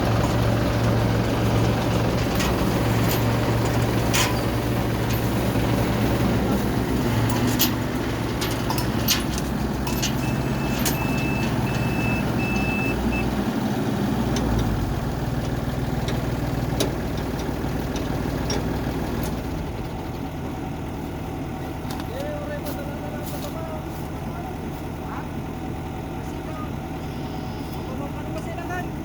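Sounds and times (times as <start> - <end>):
combine harvester engine running: 0.0 - 29.0
short high beeps: 10.2 - 13.0.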